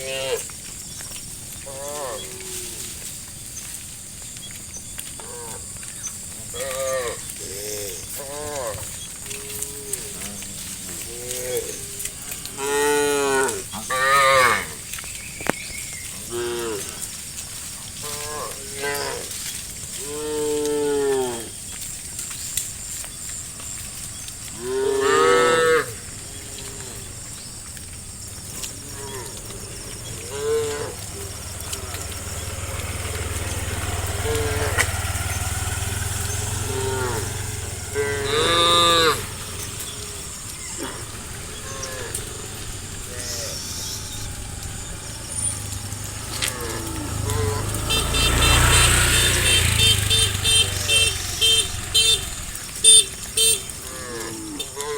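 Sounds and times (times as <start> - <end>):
cows mooing: 0.0 - 0.6, 1.6 - 3.1, 5.2 - 21.8, 23.6 - 54.9
low steady rumble: 26.0 - 53.8.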